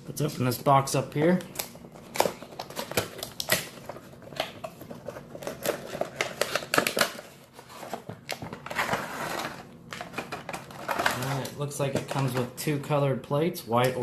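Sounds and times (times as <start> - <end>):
packaging rustling: 1.9 - 12.4.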